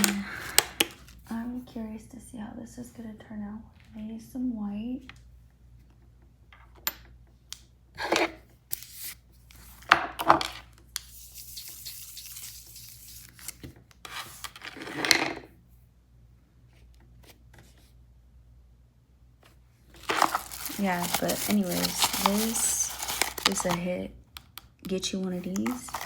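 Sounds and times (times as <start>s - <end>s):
rustling scrapes: 19.9s - 24.0s, 25.4s - 26.0s.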